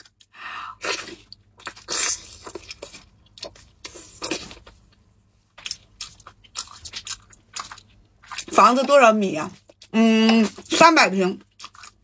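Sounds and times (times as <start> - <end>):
person chewing meat: 0.0 - 8.6, 11.5 - 12.0.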